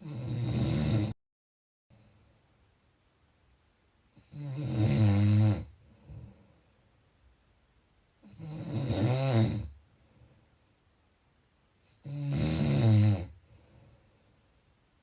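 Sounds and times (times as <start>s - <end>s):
person snoring: 0.0s - 1.2s, 4.2s - 6.4s, 8.2s - 9.8s, 11.9s - 13.4s.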